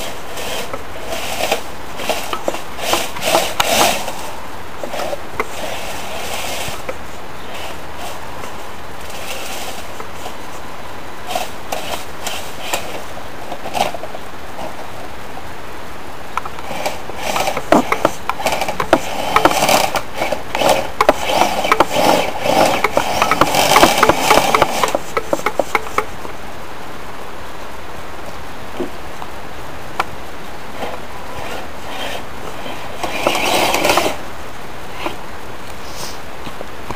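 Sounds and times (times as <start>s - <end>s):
toy tracked vehicle rattling and scraping: 0.0s - 10.6s, 11.2s - 15.0s, 16.4s - 26.3s, 30.7s - 34.3s
steady hiss: 0.0s - 36.9s.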